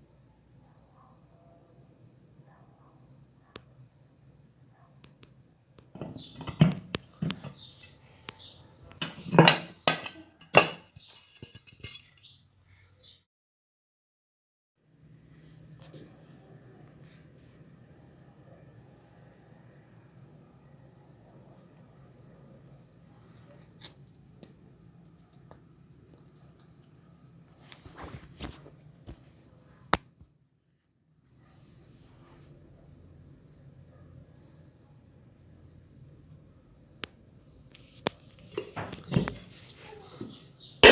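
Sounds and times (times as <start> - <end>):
handling rustles and scrapes: 6.0 - 12.4, 26.1 - 29.8.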